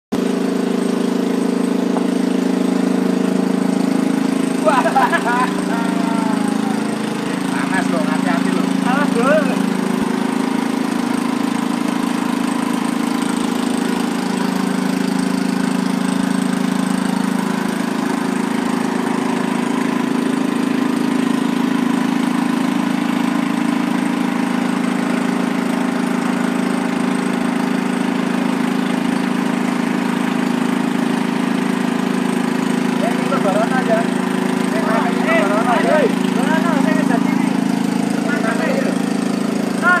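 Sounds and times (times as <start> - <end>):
small engine running: 0.1 - 40.0.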